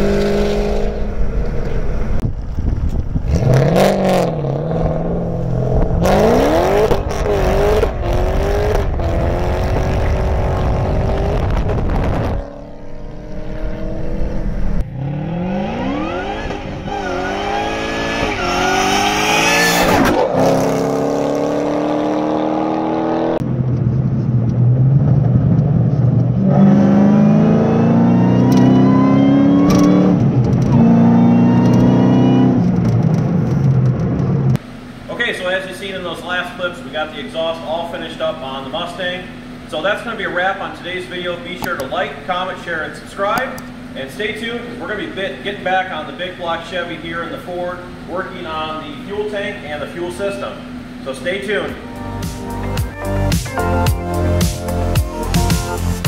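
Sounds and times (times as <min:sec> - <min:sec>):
car engine revving: 0:00.0 - 0:34.6.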